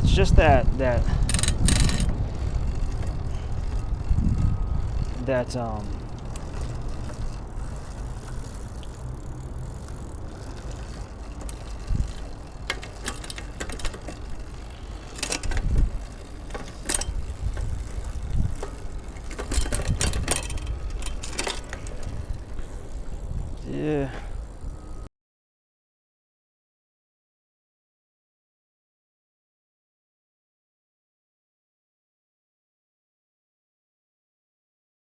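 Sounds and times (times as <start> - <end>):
steady low hum: 0.0 - 25.1
mechanical clicks and knocks: 10.9 - 22.2.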